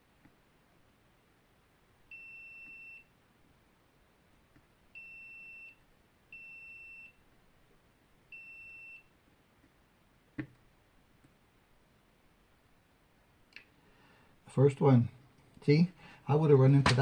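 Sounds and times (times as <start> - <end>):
continuity tester beeping: 2.1 - 3.1, 5.0 - 7.2, 8.3 - 9.2.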